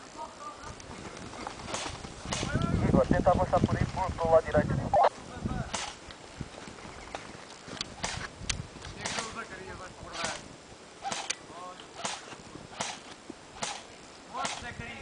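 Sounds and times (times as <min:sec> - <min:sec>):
airsoft gun shots: 0:01.7 - 0:02.6, 0:05.6 - 0:06.0, 0:08.0 - 0:08.3, 0:09.0 - 0:09.4, 0:10.1 - 0:10.4, 0:11.0 - 0:11.4, 0:12.0 - 0:14.8.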